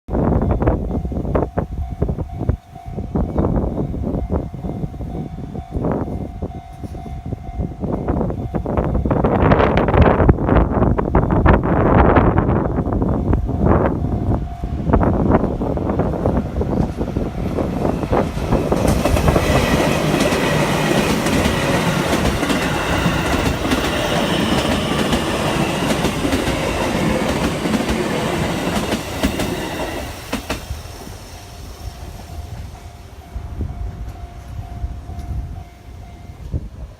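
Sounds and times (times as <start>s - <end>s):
crossing warning bell ringing: 0.1s - 9.9s, 12.6s - 36.9s
train cars rumbling by: 1.0s - 36.9s
train wheels clattering: 16.7s - 32.8s.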